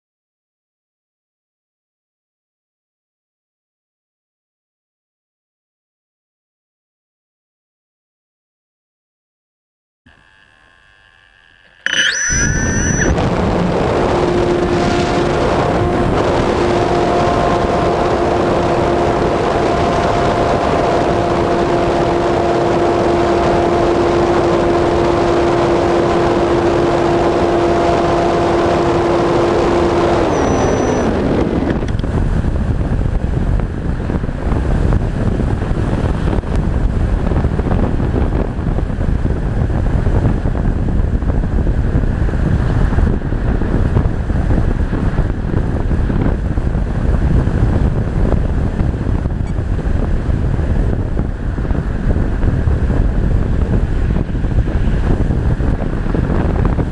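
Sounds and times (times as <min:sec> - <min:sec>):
model glider motor running: 0:10.1 - 0:13.1
wind rush: 0:12.2 - 0:56.9.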